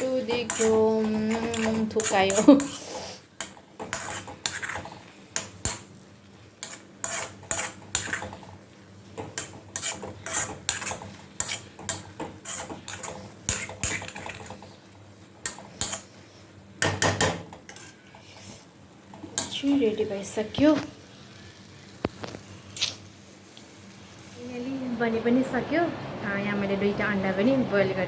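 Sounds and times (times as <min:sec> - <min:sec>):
utensil scraping a pan: 0:00.0 - 0:21.5.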